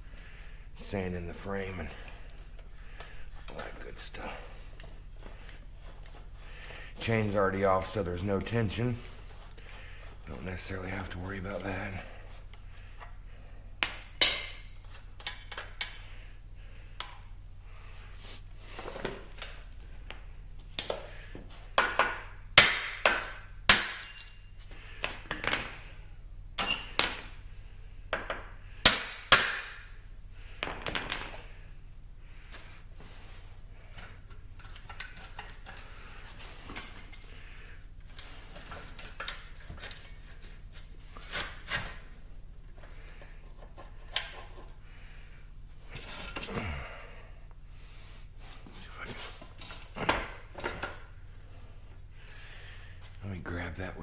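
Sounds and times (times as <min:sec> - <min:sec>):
steady low hum: 0:00.0 - 0:54.0
metal tools clinking: 0:24.0 - 0:24.7, 0:26.6 - 0:27.4.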